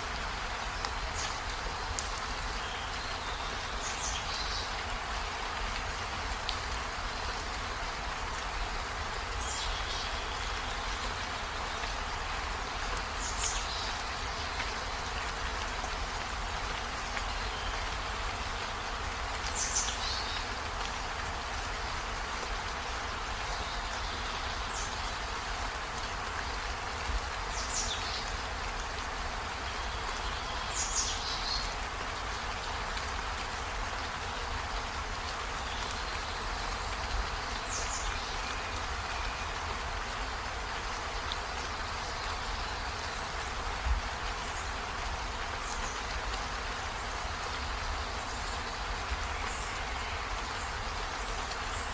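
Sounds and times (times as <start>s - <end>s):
steady rain: 0.0s - 51.9s.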